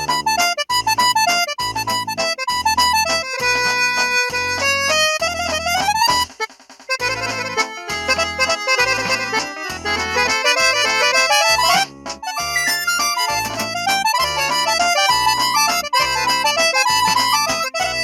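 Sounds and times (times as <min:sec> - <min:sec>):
polyphonic phone ringtone: 0:11.0 - 0:17.9.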